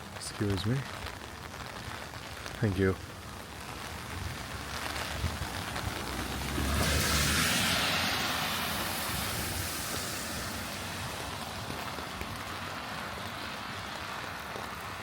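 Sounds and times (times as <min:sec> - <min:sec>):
rain hissing: 0:00.0 - 0:15.0
thunder rumble: 0:04.0 - 0:11.2.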